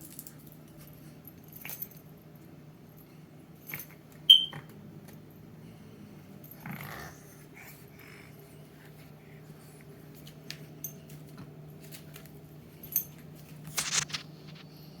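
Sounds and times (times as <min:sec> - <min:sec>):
short rustling burst: 0:13.7 - 0:14.8.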